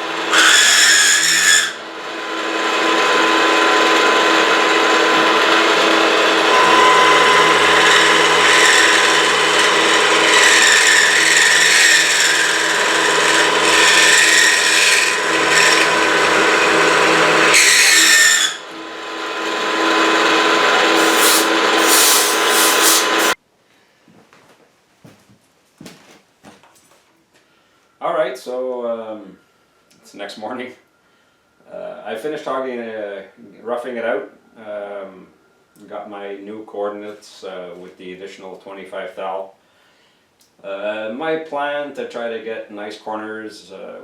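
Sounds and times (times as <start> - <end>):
harsh milling cutting noise: 0.0 - 23.4
spindle hum: 3.5 - 18.0, 19.5 - 23.4.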